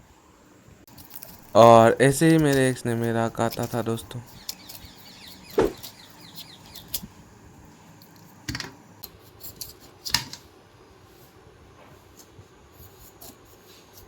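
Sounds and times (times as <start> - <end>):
knife knocking on cutting board: 5.6 - 5.8.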